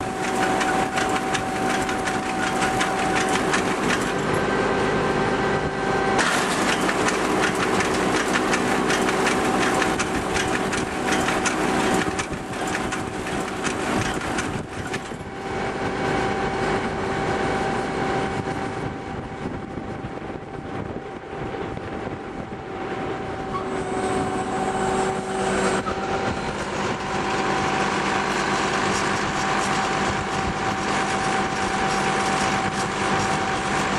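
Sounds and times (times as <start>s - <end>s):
baler mechanism clattering: 0.0s - 4.5s, 6.2s - 15.3s
tractor engine drone: 0.0s - 33.9s.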